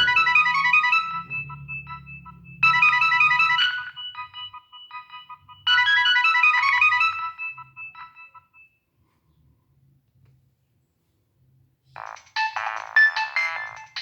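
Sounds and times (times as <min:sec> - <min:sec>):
polyphonic ringtone melody: 0:00.0 - 0:08.6, 0:12.0 - 0:14.0.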